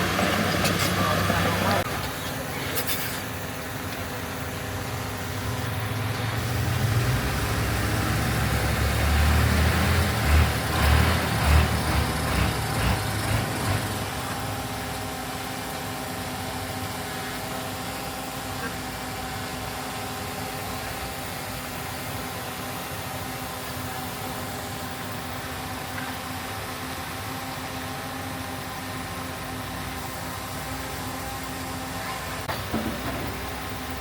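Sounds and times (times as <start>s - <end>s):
heavy diesel engine running: 0.0s - 2.6s, 3.3s - 15.7s.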